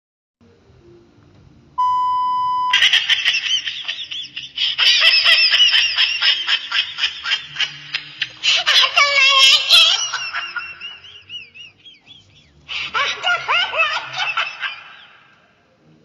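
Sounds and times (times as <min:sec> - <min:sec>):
steady beep tone: 0:01.8 - 0:02.7
high-pitched laughter: 0:02.7 - 0:15.4.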